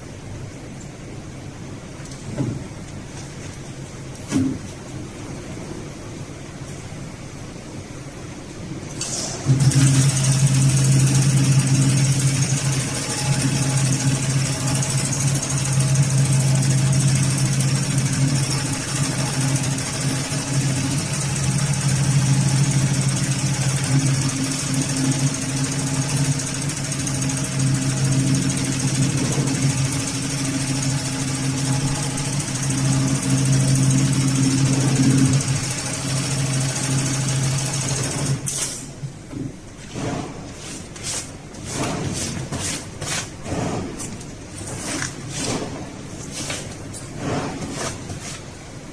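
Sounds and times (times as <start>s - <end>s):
sewing machine motor hum: 8.9s - 38.6s.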